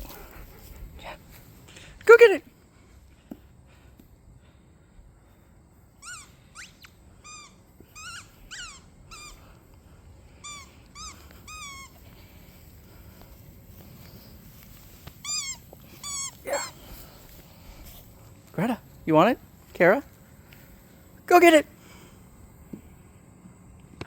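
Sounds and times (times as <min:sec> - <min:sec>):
dog whimpering: 0:06.0 - 0:09.4, 0:10.4 - 0:12.0, 0:15.3 - 0:16.9.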